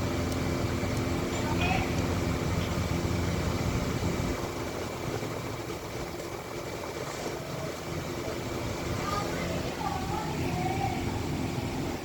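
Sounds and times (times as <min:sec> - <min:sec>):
machinery hum: 0:00.0 - 0:12.0.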